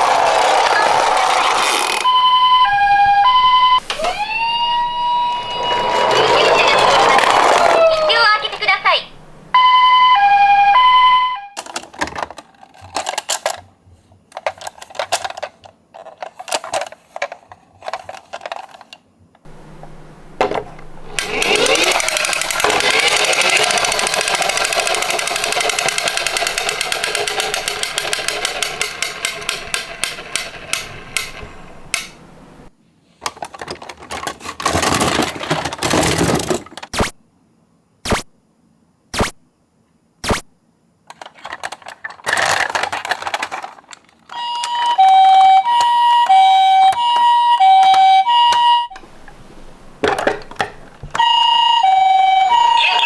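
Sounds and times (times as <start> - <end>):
toy wheels rolling clatter: 0.0 - 2.2, 5.1 - 8.6, 11.6 - 13.7, 14.3 - 19.0, 21.1 - 31.4, 33.3 - 36.9, 41.1 - 49.0
two-tone ambulance siren: 2.0 - 7.8, 9.6 - 11.6, 44.4 - 49.0, 51.2 - 53.0.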